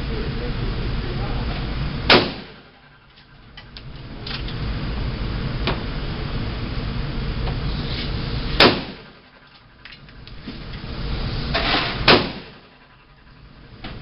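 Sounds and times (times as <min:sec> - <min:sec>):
gunshots: 0:02.1 - 0:02.6, 0:08.6 - 0:09.1, 0:12.0 - 0:12.6.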